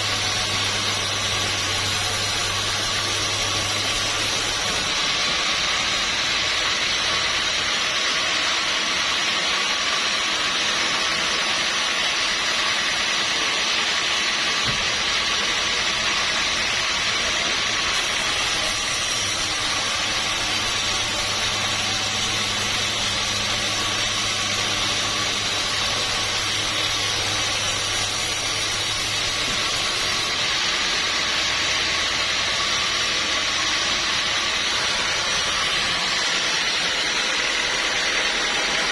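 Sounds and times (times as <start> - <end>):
sawmill machinery hissing: 0.0 - 38.9.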